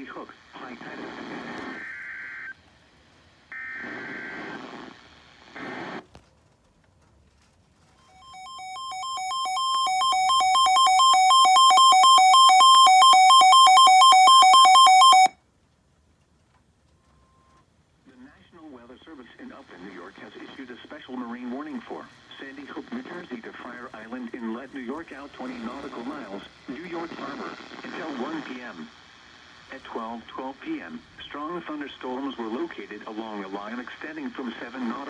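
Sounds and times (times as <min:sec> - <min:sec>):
two-tone warbling alarm: 0:08.2 - 0:15.3.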